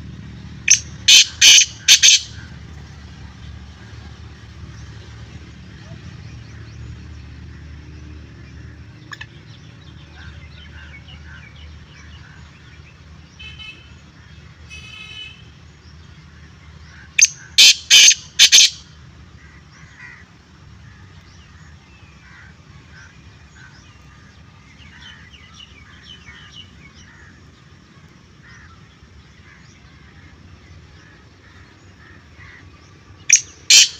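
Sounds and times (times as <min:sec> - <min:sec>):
francolin sharp call notes: 0:00.7 - 0:02.3, 0:33.3 - 0:33.9.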